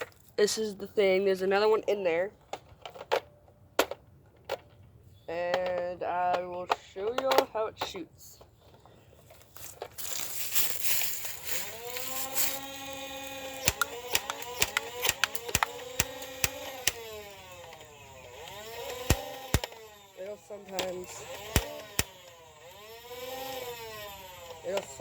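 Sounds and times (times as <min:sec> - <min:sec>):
toy blaster motor whine: 0:10.0 - 0:25.0
darts shooting clicks: 0:13.6 - 0:17.0, 0:19.1 - 0:19.8, 0:21.5 - 0:22.1.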